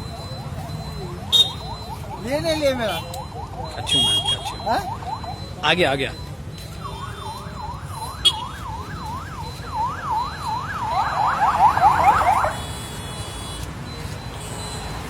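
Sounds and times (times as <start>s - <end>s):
siren wailing: 0.0s - 5.8s, 6.8s - 12.9s
siren yelp: 0.0s - 6.2s, 6.8s - 12.9s
low traffic rumble: 0.0s - 15.0s.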